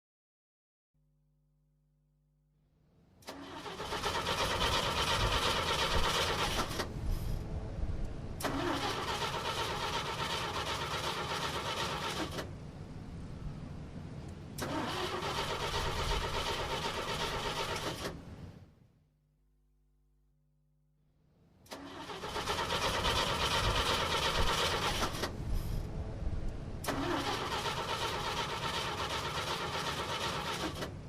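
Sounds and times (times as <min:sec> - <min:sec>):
car starter cranking engine: 0:03.2 - 0:07.3, 0:08.4 - 0:12.5, 0:14.6 - 0:18.3, 0:21.6 - 0:25.9, 0:26.8 - 0:31.0.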